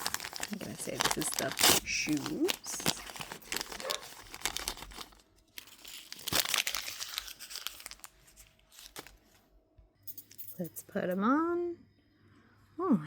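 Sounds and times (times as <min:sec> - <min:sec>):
plastic bag crinkling and tearing: 0:00.0 - 0:09.3.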